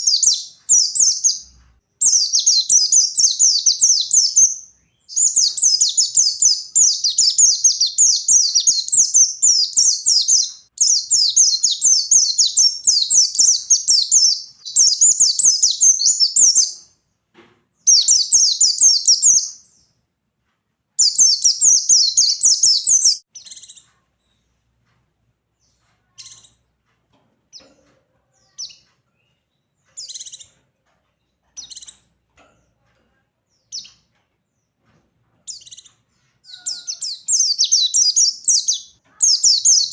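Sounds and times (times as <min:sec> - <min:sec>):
bird singing high twittering song: 0:00.0 - 0:17.0, 0:17.8 - 0:20.0, 0:21.0 - 0:24.4, 0:28.5 - 0:30.6, 0:35.5 - 0:39.9.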